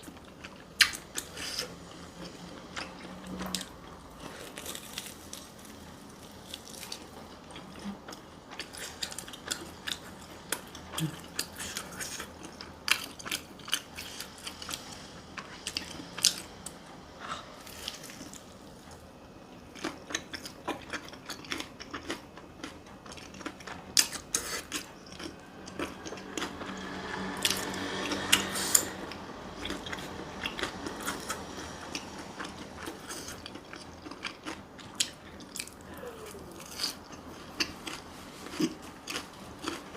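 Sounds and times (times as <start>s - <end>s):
chewing and crunching food: 0.0s - 39.9s.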